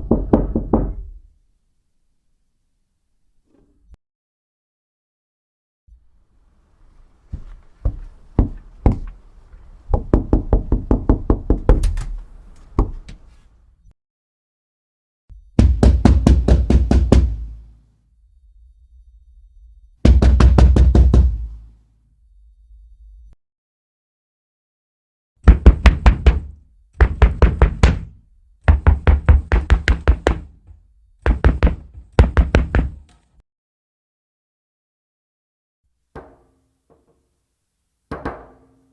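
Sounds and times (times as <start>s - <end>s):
knocking on a door: 0.0s - 1.2s, 7.9s - 9.2s, 9.9s - 12.0s, 15.6s - 17.6s, 20.0s - 21.6s, 25.4s - 33.1s, 38.1s - 38.6s.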